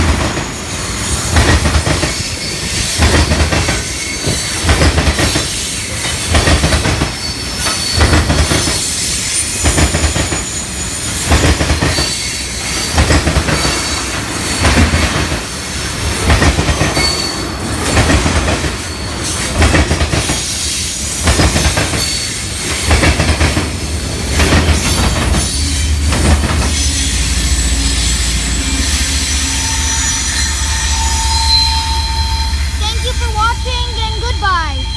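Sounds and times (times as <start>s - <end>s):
train wheels clattering over rail joints: 0.0s - 29.5s
low train rumble: 0.0s - 34.9s
faint wheel squeal: 7.2s - 11.2s, 26.7s - 33.9s.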